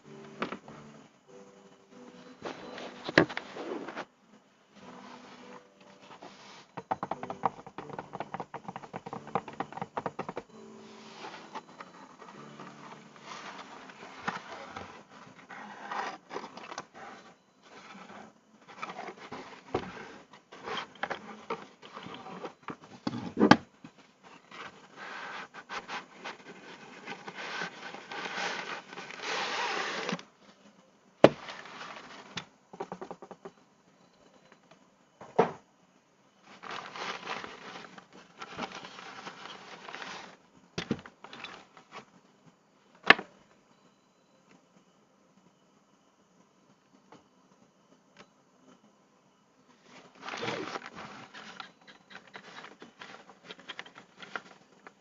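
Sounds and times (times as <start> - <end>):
packaging scraping and rustling: 2.4 - 4.1, 10.8 - 23.5, 24.3 - 30.3, 31.3 - 32.4, 36.5 - 40.4, 41.0 - 42.1, 49.9 - 54.9.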